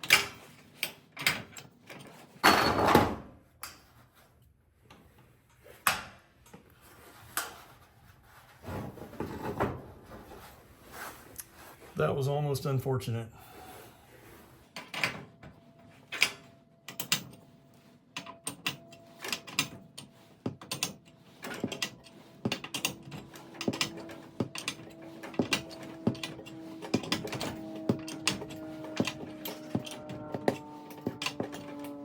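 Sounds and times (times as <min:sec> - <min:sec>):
faint steady ringing tone: 0:15.0 - 0:32.0.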